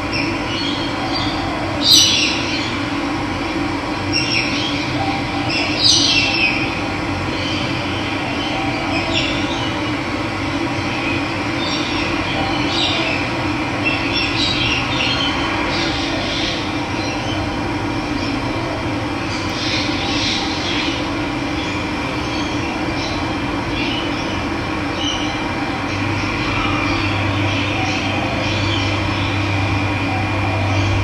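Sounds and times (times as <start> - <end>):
birds chirping: 19.2 - 31.0.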